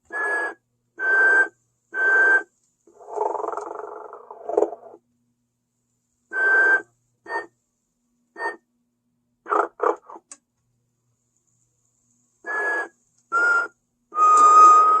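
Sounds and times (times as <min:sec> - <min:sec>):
toy snoring with whistle: 0:00.1 - 0:04.9, 0:06.4 - 0:07.5, 0:12.5 - 0:15.0.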